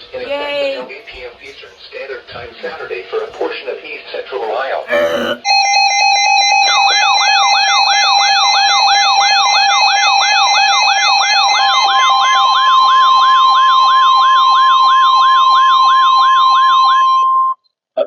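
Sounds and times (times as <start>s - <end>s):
steady alert tone: 4.9s - 5.5s.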